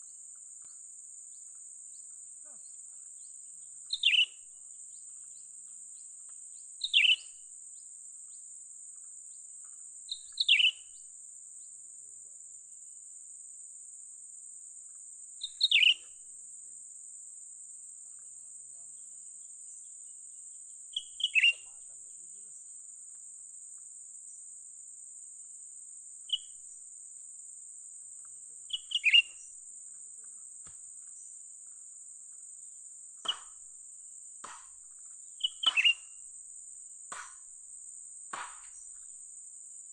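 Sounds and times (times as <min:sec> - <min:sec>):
high insect drone: 0:00.0 - 0:39.9
sharp falling bird calls: 0:03.9 - 0:04.3, 0:28.7 - 0:29.4, 0:35.4 - 0:36.1.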